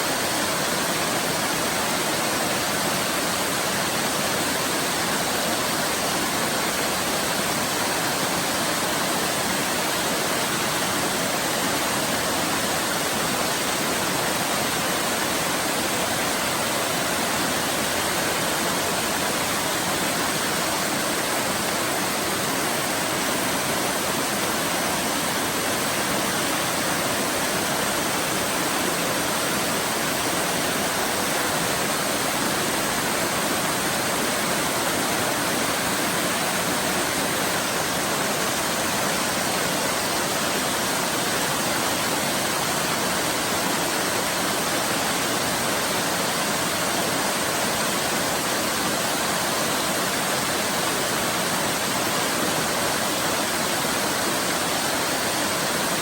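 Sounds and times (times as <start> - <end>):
waterfall roar: 0.0 - 56.0.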